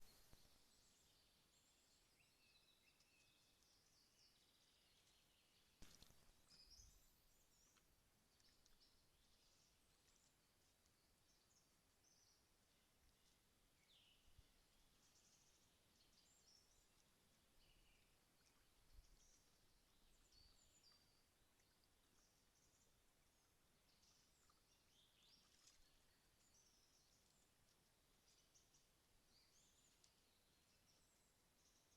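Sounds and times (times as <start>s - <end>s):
quiet hiss: 0.0s - 31.9s
faint high bird chirps: 5.8s - 10.3s.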